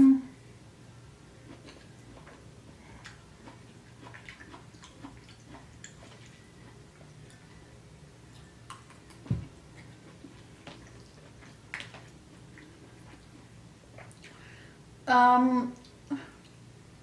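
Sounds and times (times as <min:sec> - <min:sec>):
mouth chewing noodles: 0:01.4 - 0:07.5, 0:08.3 - 0:14.4.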